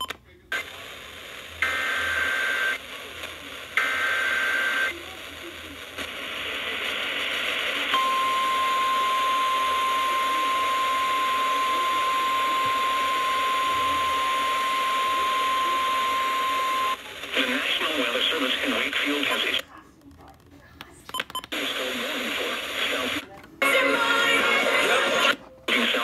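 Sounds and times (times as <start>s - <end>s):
radio static hiss: 0.3s - 19.8s, 21.5s - 26.0s
steady warning alarm tone: 8.0s - 17.0s.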